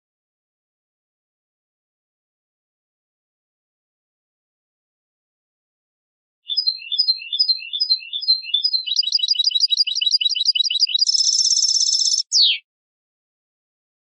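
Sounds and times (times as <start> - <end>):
goldfinch singing: 6.5 - 12.6.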